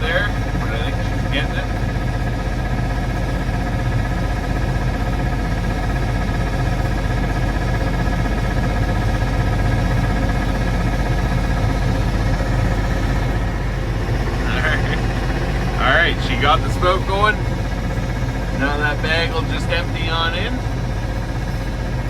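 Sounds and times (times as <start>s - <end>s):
engine idling: 0.0s - 22.0s.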